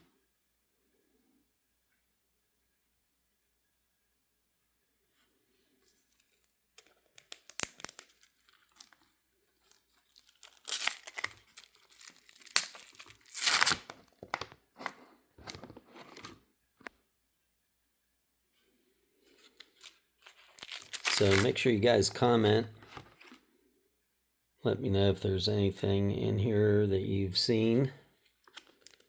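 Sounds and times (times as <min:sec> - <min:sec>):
plastic sleeves crinkling and tearing: 0:05.8 - 0:16.4, 0:19.3 - 0:22.3, 0:28.2 - 0:29.0.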